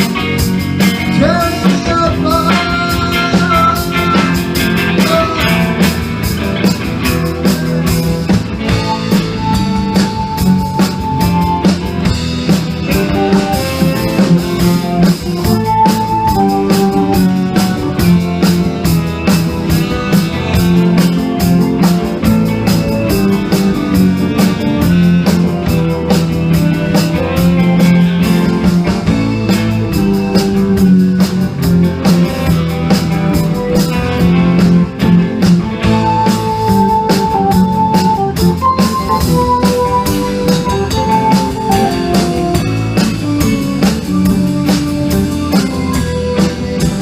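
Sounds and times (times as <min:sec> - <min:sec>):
drum kit beat: 0:00.0 - 0:47.0
guitar: 0:00.0 - 0:47.0.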